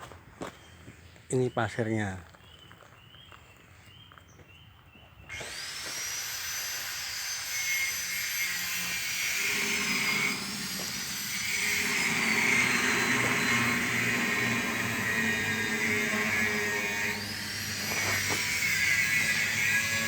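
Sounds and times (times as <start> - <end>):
stone crusher machinery running: 9.0 - 20.0.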